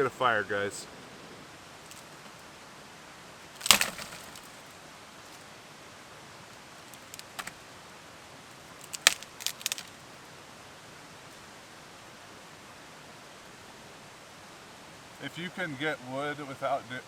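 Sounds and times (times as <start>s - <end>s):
sharp cracks and clicks: 3.6s - 4.6s, 6.8s - 7.5s, 8.8s - 10.0s.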